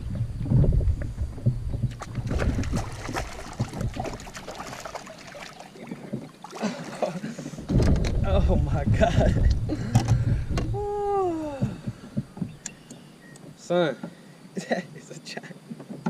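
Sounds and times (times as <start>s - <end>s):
wind buffeting microphone: 0.0s - 6.4s, 7.5s - 12.9s.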